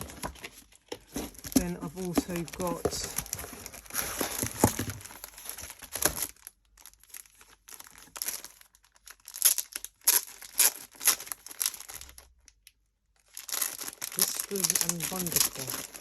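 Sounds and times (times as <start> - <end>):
paper rustling: 0.0 - 6.3, 13.5 - 16.0
packaging crinkling: 0.0 - 12.6, 13.2 - 16.0.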